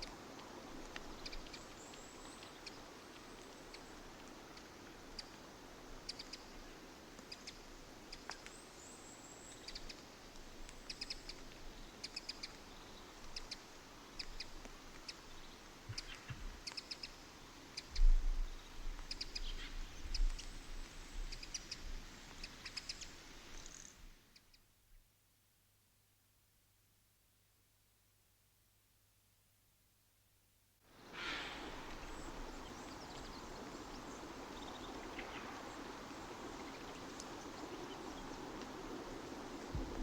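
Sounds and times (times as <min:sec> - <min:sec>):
steady outdoor hiss: 0:00.0 - 0:40.0
small birds chirping: 0:00.9 - 0:10.0, 0:10.7 - 0:24.6, 0:31.2 - 0:40.0.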